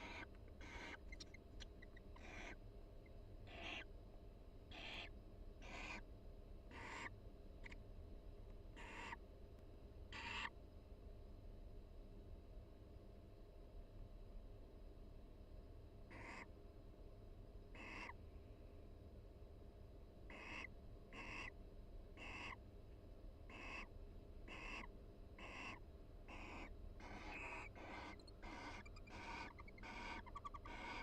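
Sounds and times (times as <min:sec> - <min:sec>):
barn owls raspy calls: 0:00.0 - 0:02.6, 0:03.5 - 0:03.9, 0:04.7 - 0:06.0, 0:06.7 - 0:07.8, 0:08.8 - 0:09.2, 0:10.1 - 0:10.5, 0:16.1 - 0:16.5, 0:17.7 - 0:18.2, 0:20.3 - 0:21.6, 0:22.2 - 0:22.6, 0:23.5 - 0:23.9, 0:24.5 - 0:31.0.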